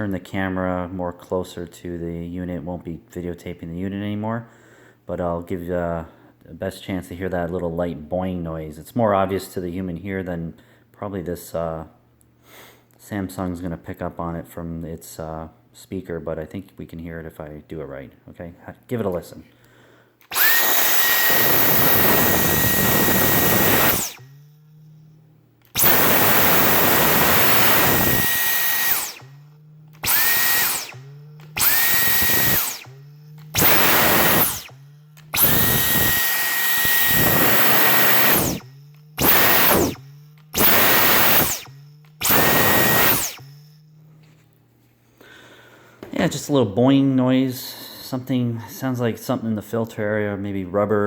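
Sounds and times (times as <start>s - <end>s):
cordless vacuum whining: 20.2s - 44.4s.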